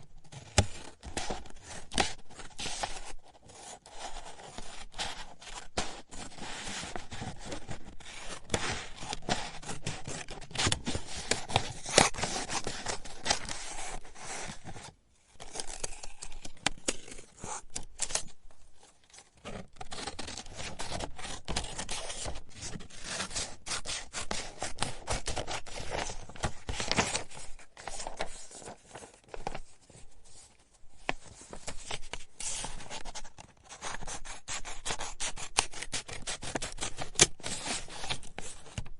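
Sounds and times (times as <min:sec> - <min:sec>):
scissors cutting paper: 0:33.8 - 0:38.8.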